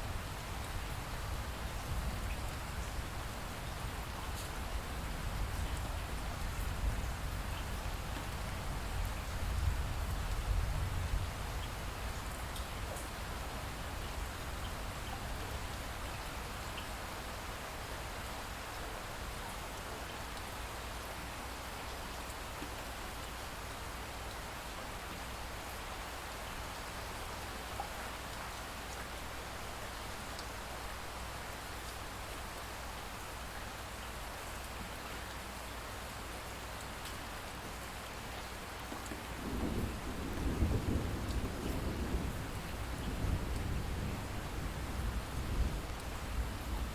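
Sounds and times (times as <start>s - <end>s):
steady rain: 0.0s - 46.9s
low rumble of thunder: 4.7s - 14.7s, 39.1s - 46.9s.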